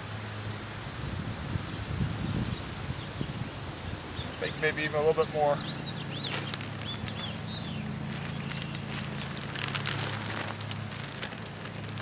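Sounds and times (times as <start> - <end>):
gravel pouring from a bag: 6.3 - 7.4, 8.1 - 12.0.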